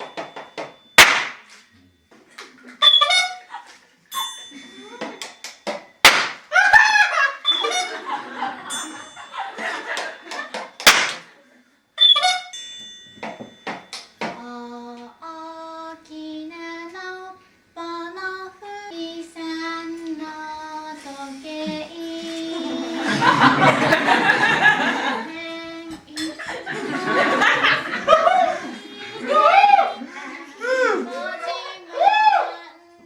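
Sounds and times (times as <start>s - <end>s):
high voice singing a tune: 14.4s - 23.4s, 25.1s - 27.3s, 28.4s - 33.0s.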